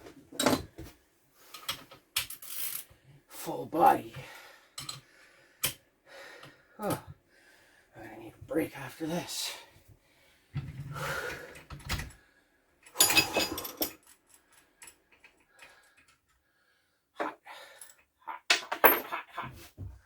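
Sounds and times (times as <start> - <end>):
metal tools clinking and clattering: 12.8 - 16.1, 18.5 - 19.2.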